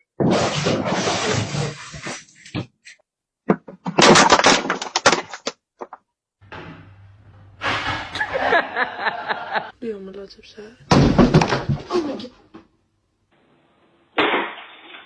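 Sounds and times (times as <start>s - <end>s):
loud crash with clattering: 6.5s - 8.8s.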